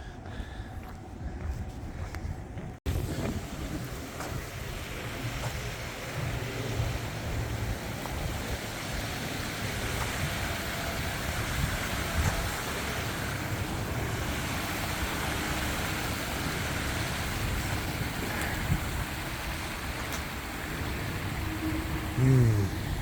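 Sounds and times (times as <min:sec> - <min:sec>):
wind on microphone: 0:00.8 - 0:13.4
creek water rushing: 0:02.9 - 0:23.0.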